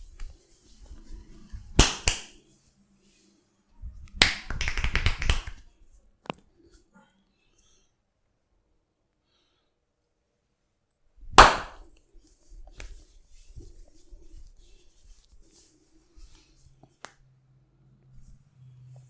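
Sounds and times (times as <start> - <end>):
faint rubbing: 0.0 - 4.0, 12.0 - 17.0
sharp smack of hands: 1.8 - 2.4, 4.2 - 5.6, 11.4 - 11.8.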